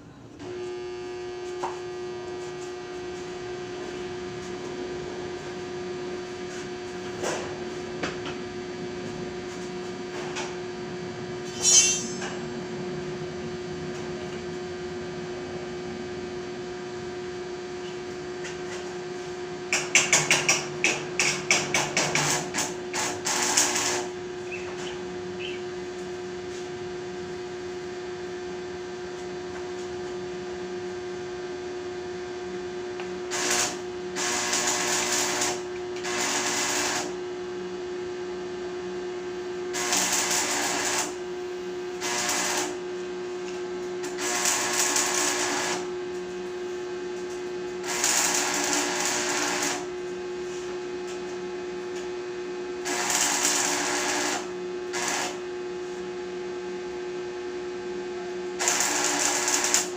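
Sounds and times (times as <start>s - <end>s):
welding machine humming: 0.4s - 59.9s
crackling hissing welding arc: 19.7s - 26.2s, 33.2s - 37.2s, 39.7s - 41.2s, 41.9s - 42.9s, 44.0s - 46.0s, 47.3s - 50.0s, 52.8s - 55.4s, 58.6s - 59.9s.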